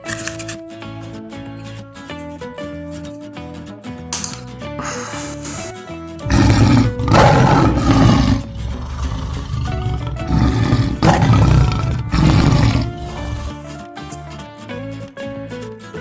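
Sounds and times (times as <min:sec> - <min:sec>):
acoustic guitar music: 0:00.0 - 0:16.0
lion roaring and grunting: 0:06.3 - 0:14.2.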